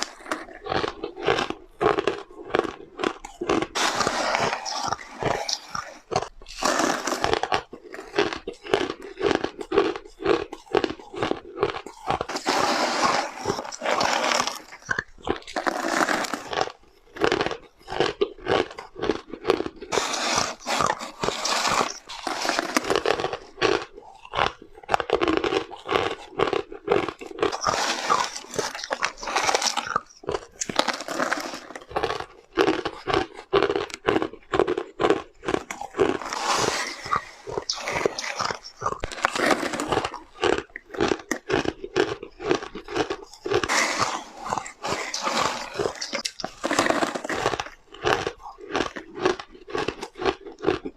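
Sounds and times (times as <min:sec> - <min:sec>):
crunching and chewing ice: 0:00.0 - 0:50.9.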